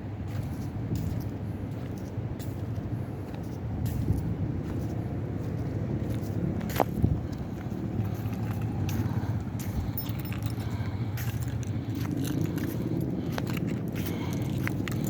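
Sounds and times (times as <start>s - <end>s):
car engine idling: 7.3s - 15.0s.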